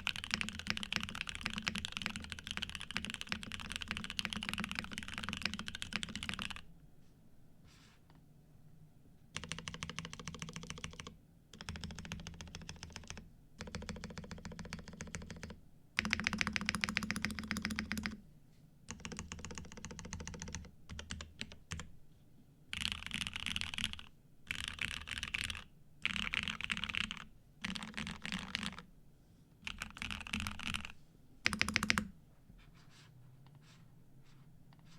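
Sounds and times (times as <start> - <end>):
mechanical keyboard typing: 0.0 - 6.7, 9.4 - 18.2, 18.9 - 21.9, 22.7 - 28.9, 29.6 - 32.1.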